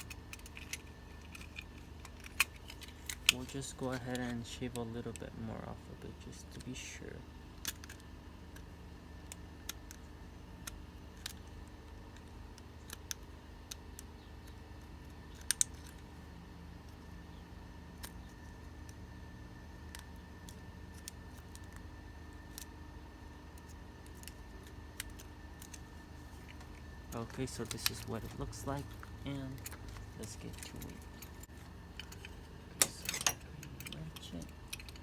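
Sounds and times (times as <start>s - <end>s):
steady low hum: 0.0s - 35.0s
light clicks and scrapes: 23.6s - 35.0s.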